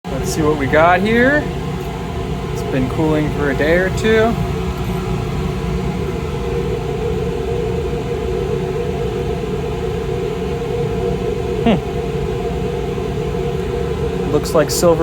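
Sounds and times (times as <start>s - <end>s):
fan humming: 0.0s - 15.0s.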